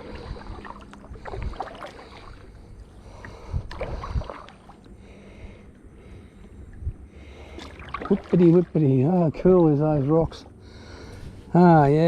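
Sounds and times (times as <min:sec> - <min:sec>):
paddle splashes: 0:00.0 - 0:04.9, 0:07.4 - 0:10.2
water slapping around hull: 0:00.0 - 0:04.9, 0:06.6 - 0:10.5.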